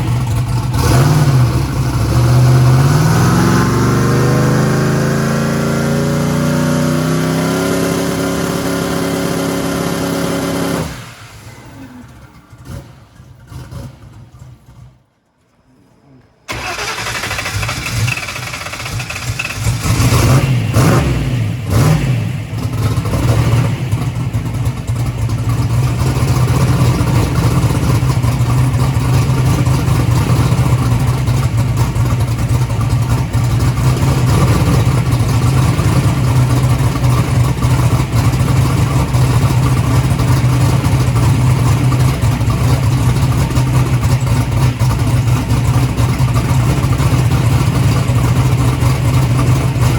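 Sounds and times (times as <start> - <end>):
turbocharged engine revving: 0.0 - 14.8, 16.5 - 49.9.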